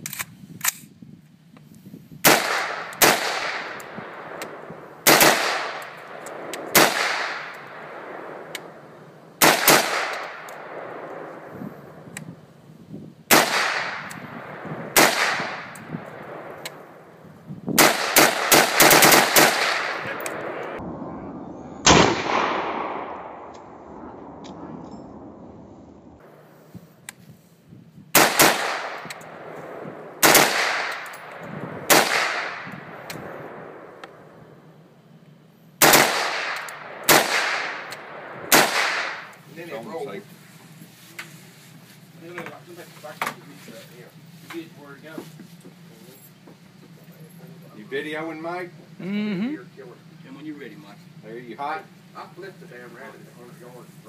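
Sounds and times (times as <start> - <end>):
faint background noise: 0.0 - 54.0
rifle gunshots with echo: 2.2 - 12.1, 13.3 - 26.5, 28.1 - 34.7, 35.8 - 40.3.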